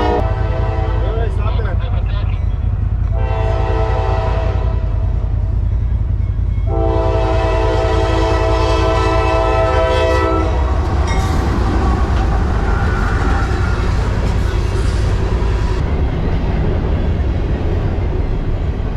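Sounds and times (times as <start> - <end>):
train horn blast: 0.0 - 1.4, 3.1 - 5.2, 6.6 - 10.9.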